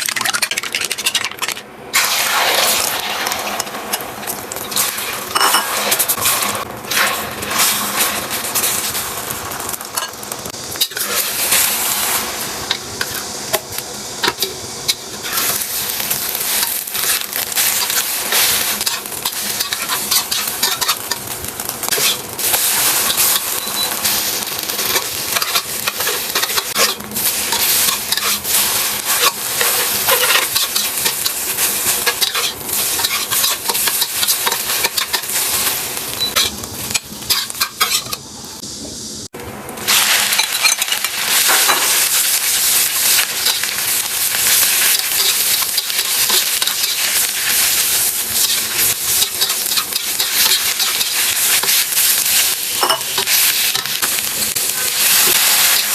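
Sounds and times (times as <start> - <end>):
food sizzling in a pan: 0.0 - 55.9
utensil scraping a pan: 21.9 - 23.8, 24.9 - 38.2.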